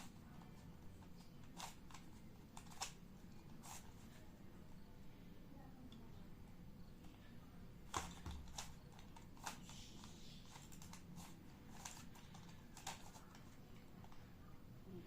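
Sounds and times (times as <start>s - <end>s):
puzzle cube clicking: 1.0s - 3.8s, 7.9s - 14.2s.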